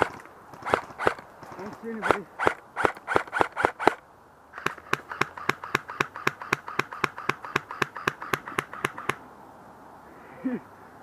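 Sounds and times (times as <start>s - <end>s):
airsoft gun firing: 0.0s - 4.0s.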